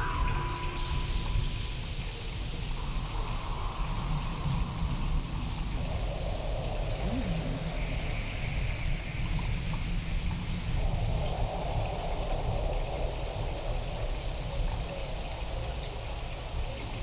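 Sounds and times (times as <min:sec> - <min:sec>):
steady rain: 0:02.2 - 0:17.0
deep low rumble: 0:06.7 - 0:08.8.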